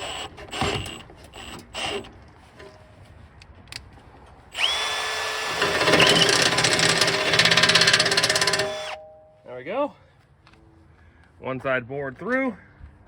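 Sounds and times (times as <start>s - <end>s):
electric drill whining: 0.0s - 2.1s, 4.6s - 9.0s.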